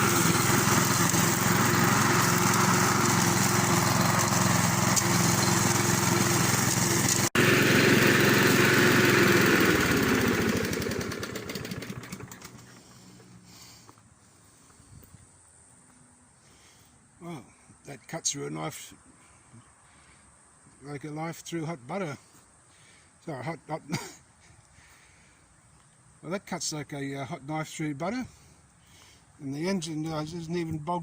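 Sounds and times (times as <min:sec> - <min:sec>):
lawnmower engine running: 0:00.0 - 0:13.8.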